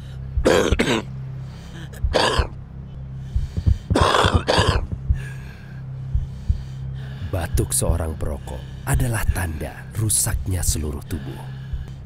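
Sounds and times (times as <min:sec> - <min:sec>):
person hacking cough: 0:00.4 - 0:01.1, 0:02.1 - 0:02.5, 0:03.9 - 0:04.9.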